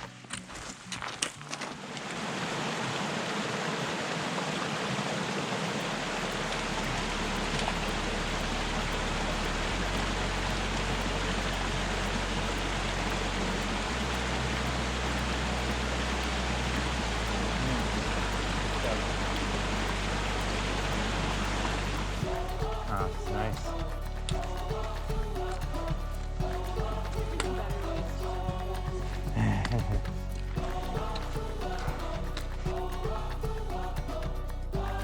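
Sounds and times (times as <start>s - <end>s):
running water rushing: 1.6s - 35.0s
low steady drone: 5.2s - 35.0s.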